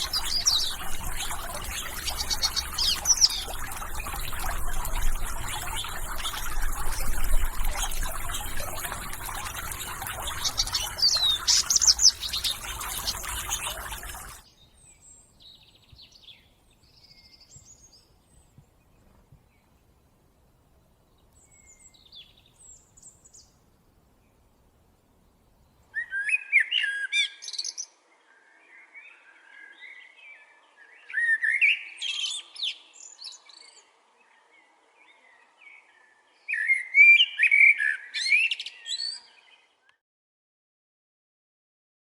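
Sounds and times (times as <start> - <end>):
steady rushing hiss: 0.0 - 14.4
small birds chirping: 0.0 - 19.7.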